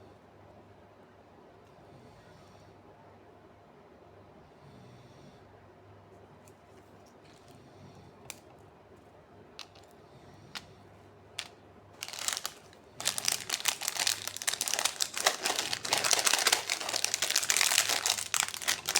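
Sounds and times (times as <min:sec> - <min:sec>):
candy wrapper crinkling: 0:11.4 - 0:18.9.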